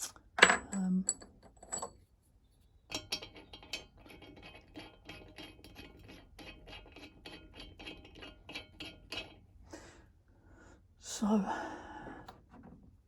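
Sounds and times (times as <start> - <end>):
small metallic clicks and scrapes: 2.9 - 9.5.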